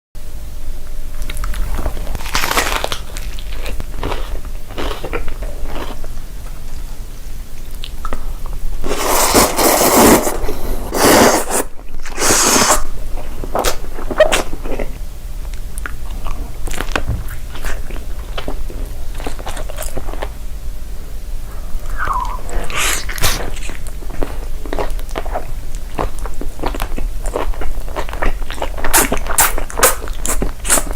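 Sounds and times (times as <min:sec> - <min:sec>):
person chewing crunchy food: 0:01.1 - 0:20.4, 0:21.5 - 0:30.9.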